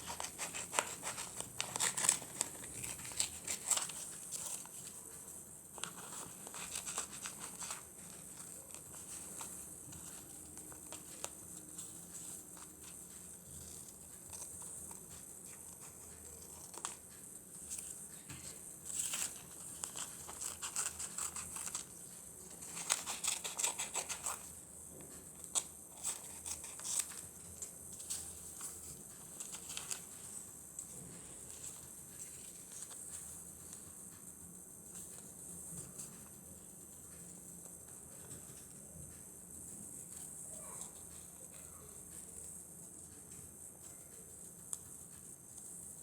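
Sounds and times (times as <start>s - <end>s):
paper crinkling: 0.0s - 33.8s
faint steady hiss: 0.0s - 46.0s.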